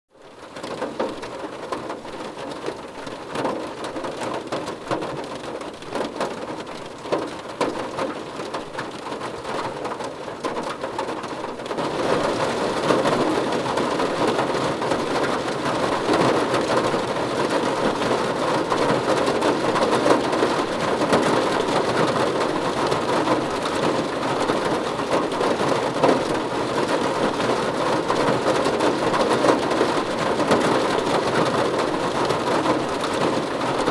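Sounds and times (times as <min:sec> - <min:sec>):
rain falling on a car roof: 0:00.2 - 0:33.9.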